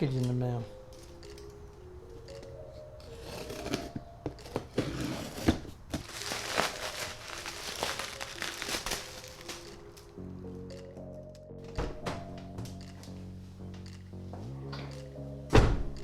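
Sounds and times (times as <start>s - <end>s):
quiet background music: 0.0s - 16.0s
packaging crinkling and tearing: 5.2s - 10.1s.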